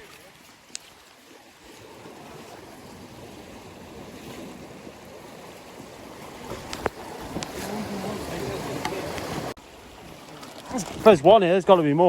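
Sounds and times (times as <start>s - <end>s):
waves washing onto rocky shore: 0.0s - 12.0s.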